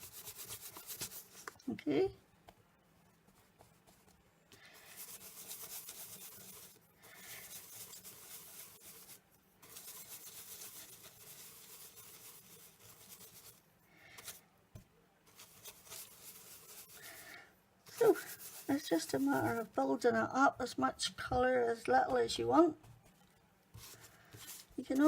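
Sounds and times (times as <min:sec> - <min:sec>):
brush rubbing on cardstock: 0:00.0 - 0:01.6, 0:03.3 - 0:14.4, 0:15.2 - 0:19.8, 0:23.7 - 0:25.0.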